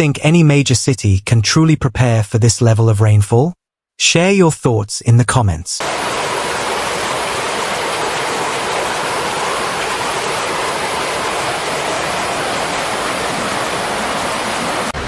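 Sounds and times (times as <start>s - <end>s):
rushing floodwater: 5.8s - 15.0s.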